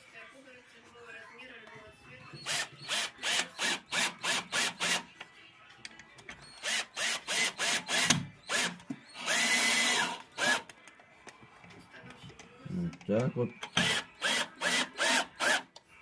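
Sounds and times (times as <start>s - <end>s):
power drill running: 2.4s - 5.0s, 6.6s - 10.7s, 13.7s - 15.7s.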